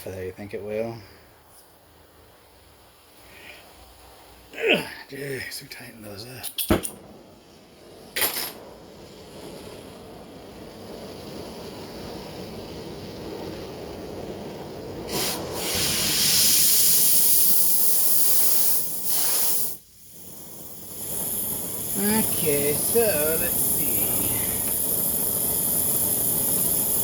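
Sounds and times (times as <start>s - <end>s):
gas torch hissing: 5.2s - 27.0s.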